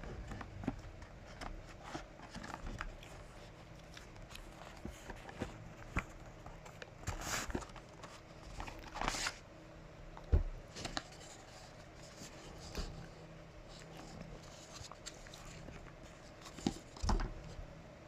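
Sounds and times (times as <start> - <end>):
packaging rustling and crinkling: 0.1 - 9.4, 10.7 - 17.5.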